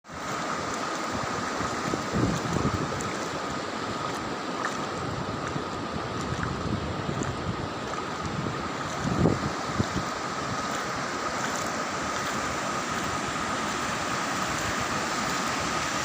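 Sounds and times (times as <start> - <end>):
sea surf washing: 0.1 - 16.0
wind buffeting microphone: 1.2 - 13.4.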